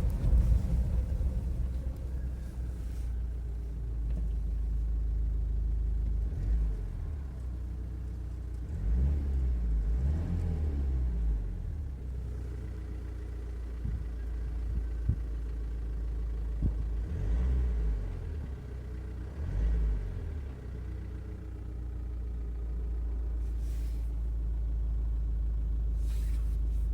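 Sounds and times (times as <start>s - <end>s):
engine knocks: 0.0s - 4.4s
engine low rumble: 0.0s - 26.9s.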